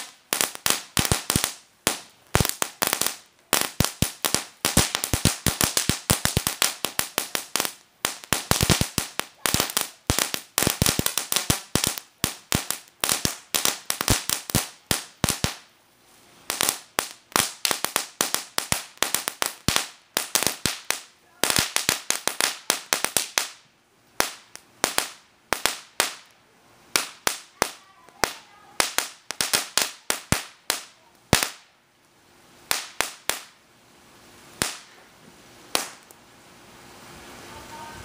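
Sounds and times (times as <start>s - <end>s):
firecracker bangs: 0.0s - 15.7s, 16.5s - 23.6s, 26.9s - 31.7s, 32.7s - 33.6s, 34.6s - 35.0s, 35.7s - 36.1s.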